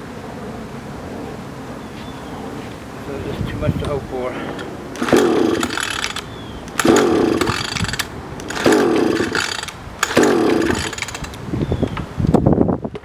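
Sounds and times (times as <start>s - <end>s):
outboard engine turning over: 3.7s - 11.9s
starter rope yanked: 3.8s - 12.0s.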